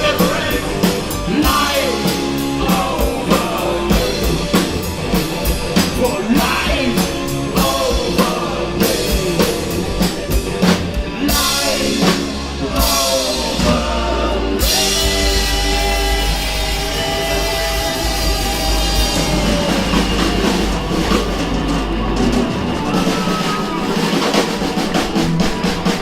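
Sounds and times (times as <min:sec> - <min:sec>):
person singing: 0:00.0 - 0:04.9, 0:05.7 - 0:10.2, 0:11.0 - 0:21.0
rock band playing live: 0:00.0 - 0:26.0.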